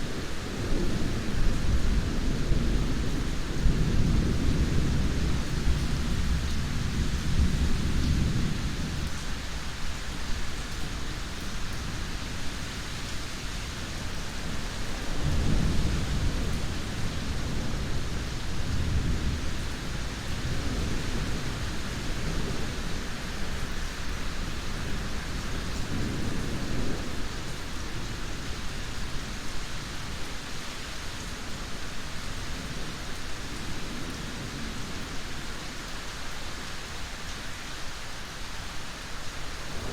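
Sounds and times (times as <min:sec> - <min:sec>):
heavy rain: 0:00.0 - 0:39.9
low thunder rumbling: 0:39.6 - 0:39.9.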